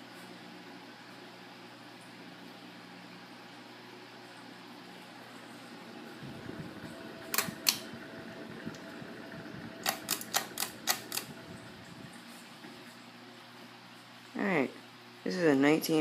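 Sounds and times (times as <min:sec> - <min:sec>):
ceiling fan humming: 0:00.0 - 0:16.0
sharp clicks: 0:07.3 - 0:07.8, 0:09.8 - 0:11.3.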